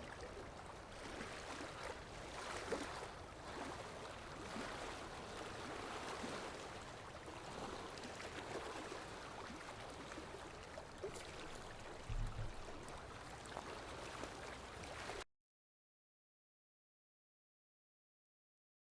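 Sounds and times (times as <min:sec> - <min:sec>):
floodwater rushing: 0:11.0 - 0:15.2
low thump: 0:12.0 - 0:12.8.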